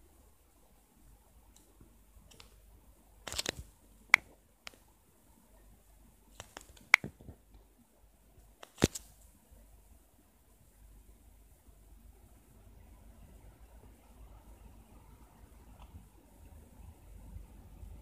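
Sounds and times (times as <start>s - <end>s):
faint low hum: 0.0s - 18.0s.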